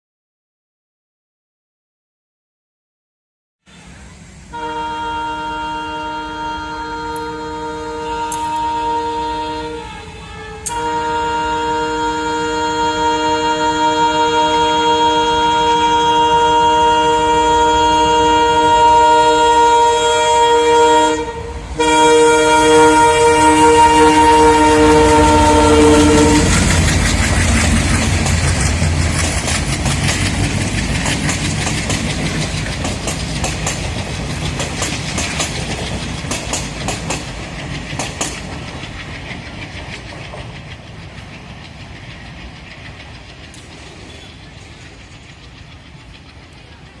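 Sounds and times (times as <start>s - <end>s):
diesel locomotive horn: 3.7s - 28.2s, 44.0s - 44.6s
locomotive engine chugging: 21.8s - 47.0s
coaches clattering over rail joints: 25.0s - 47.0s.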